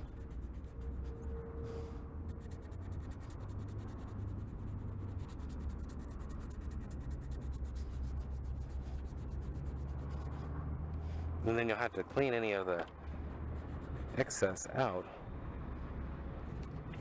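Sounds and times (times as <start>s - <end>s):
low steady hum: 0.0s - 17.0s
hand scrubbing plastic lens: 2.2s - 10.5s, 13.5s - 14.6s.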